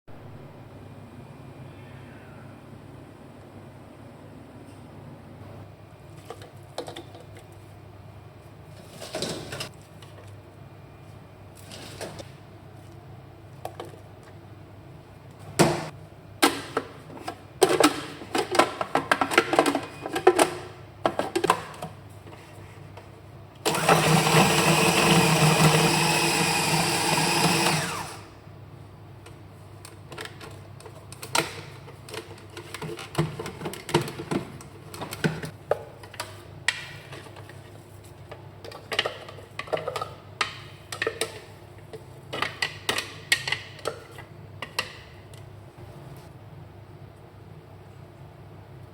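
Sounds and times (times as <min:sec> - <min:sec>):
electric blender running: 0:23.6 - 0:28.4.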